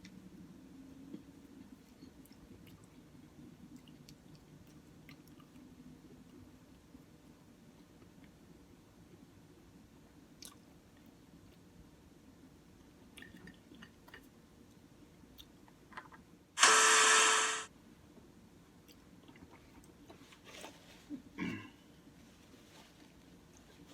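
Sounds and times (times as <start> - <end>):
loud hiss-like burst: 16.6 - 17.7.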